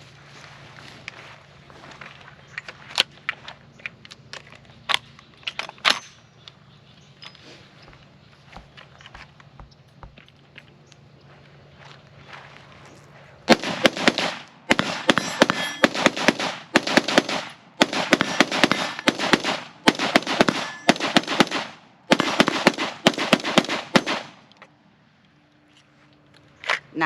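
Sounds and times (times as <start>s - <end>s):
rifle gunshots: 13.5s - 24.4s.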